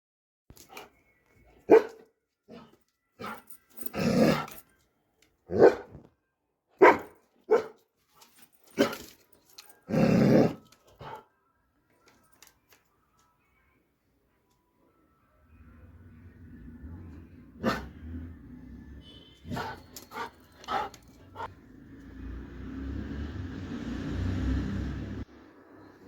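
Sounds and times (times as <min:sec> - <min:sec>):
dog barking: 0:01.7 - 0:03.4, 0:05.5 - 0:06.0, 0:06.8 - 0:07.8, 0:17.6 - 0:18.0, 0:19.4 - 0:21.5.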